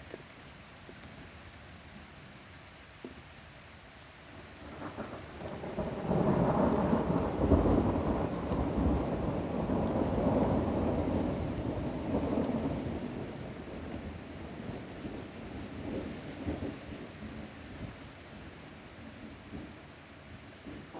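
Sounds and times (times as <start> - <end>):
steady rain: 0.0 - 20.9
thunder rumbling: 4.7 - 18.0.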